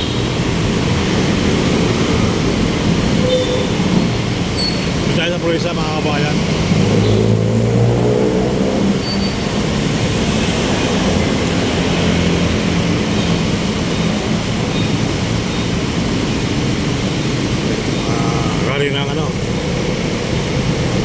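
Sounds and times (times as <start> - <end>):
traffic noise: 0.0 - 21.0
vehicle engine running close: 0.0 - 21.0.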